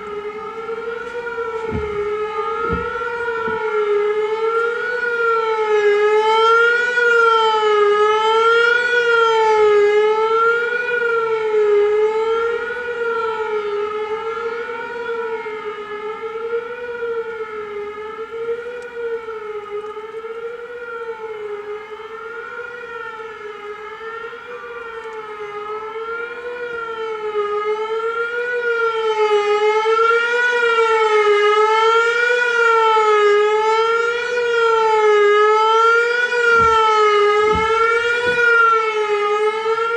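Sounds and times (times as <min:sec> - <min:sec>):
wavering warning siren: 0:00.0 - 0:39.9.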